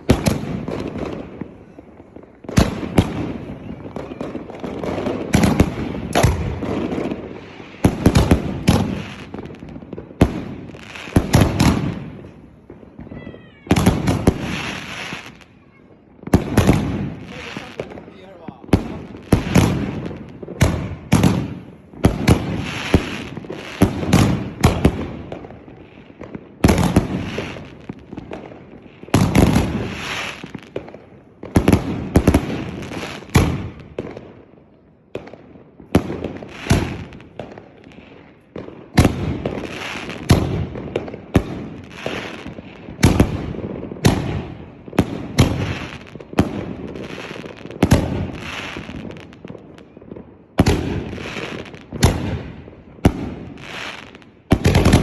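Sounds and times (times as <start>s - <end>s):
firework shells banging and crackling: 0.0s - 55.0s.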